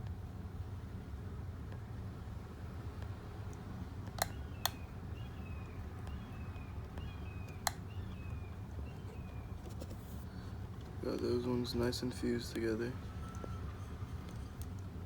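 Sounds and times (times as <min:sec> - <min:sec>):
steady low hum: 0:00.0 - 0:15.0
small bird chirping: 0:04.2 - 0:10.4.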